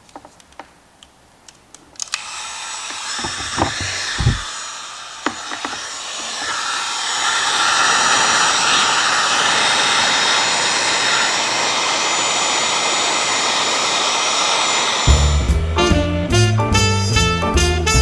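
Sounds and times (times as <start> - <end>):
heat gun fan blowing: 2.0 - 15.5.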